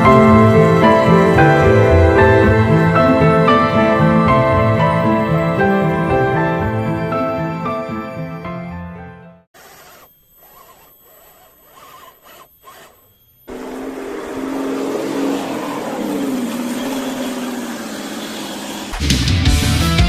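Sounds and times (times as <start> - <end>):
toy truck motor whining: 0.0 - 3.6, 9.5 - 19.0
loud rock music: 18.9 - 20.0.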